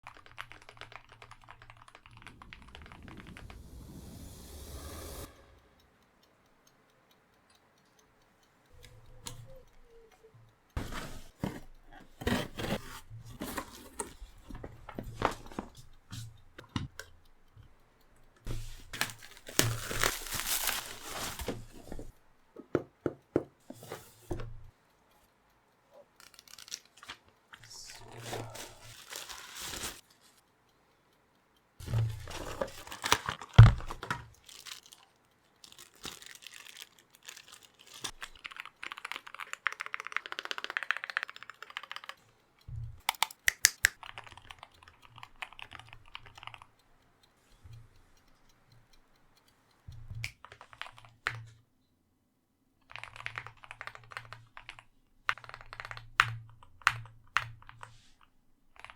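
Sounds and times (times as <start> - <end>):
packaging tearing and crinkling: 19.0 - 21.5, 26.2 - 27.0, 35.6 - 38.2.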